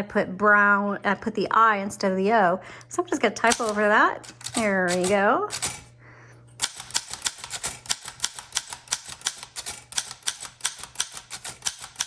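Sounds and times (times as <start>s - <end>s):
typewriter keystroke clacks: 3.5s - 5.9s, 6.6s - 12.0s.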